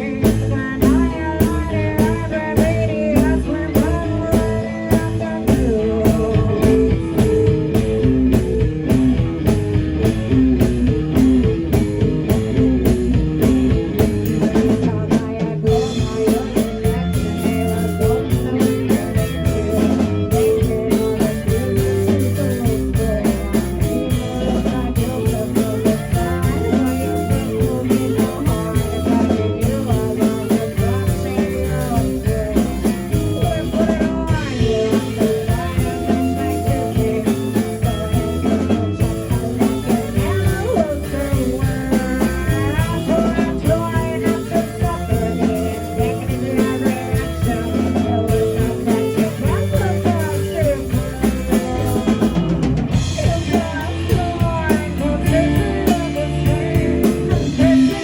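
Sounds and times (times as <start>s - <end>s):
drum kit beat: 0.0s - 58.0s
electric guitar: 0.0s - 58.0s.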